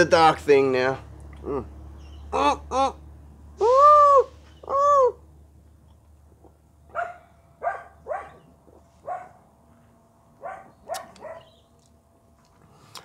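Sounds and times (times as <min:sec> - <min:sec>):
dog barking: 0:06.9 - 0:09.4, 0:10.4 - 0:11.5.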